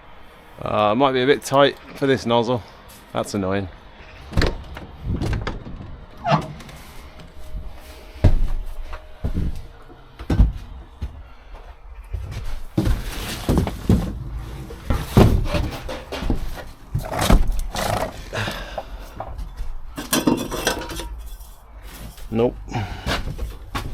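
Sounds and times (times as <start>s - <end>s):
hard gear knocking and rattling: 13.5s - 18.7s.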